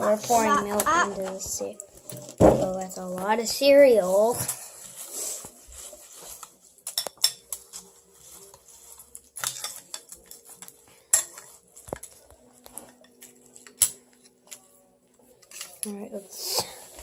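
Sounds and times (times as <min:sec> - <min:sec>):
spoons clinking on bowls: 0:06.8 - 0:14.6.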